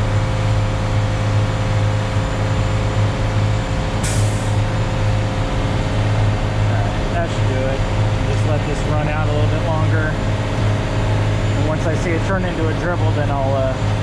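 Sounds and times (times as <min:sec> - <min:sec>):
diesel truck engine running: 0:00.0 - 0:14.0
air release hiss: 0:04.0 - 0:04.6.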